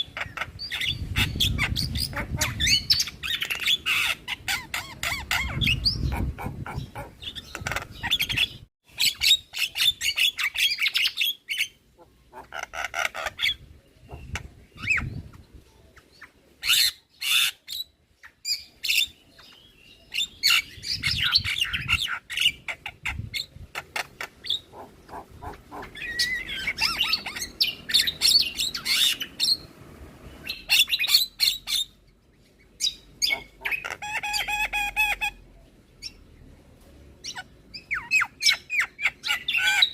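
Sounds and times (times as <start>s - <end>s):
bird harsh chattering calls: 0.0s - 15.2s, 20.2s - 29.7s, 32.8s - 35.4s.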